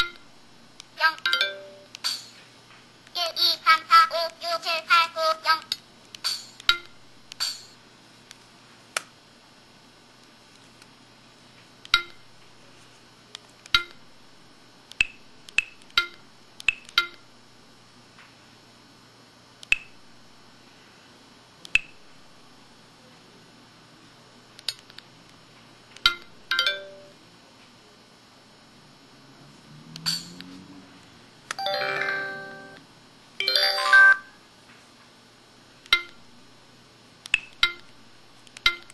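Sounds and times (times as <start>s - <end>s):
phone bell-like pings and chimes: 1.3s - 1.9s, 26.6s - 27.1s, 31.6s - 32.8s, 33.4s - 34.4s.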